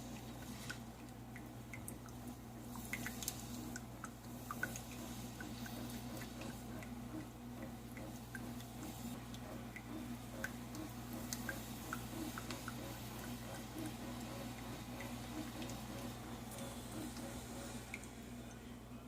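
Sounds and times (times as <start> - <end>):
coffee dripping into a mug: 0.0 - 18.7
coffee maker humming: 0.0 - 19.0.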